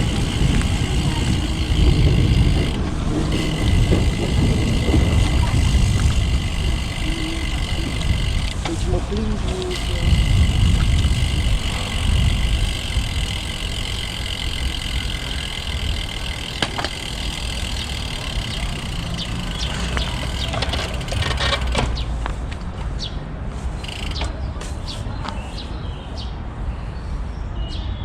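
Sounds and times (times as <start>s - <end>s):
bike tyres rolling on path: 0.0s - 25.1s
birds chirping: 0.0s - 28.0s
wind: 0.0s - 28.0s.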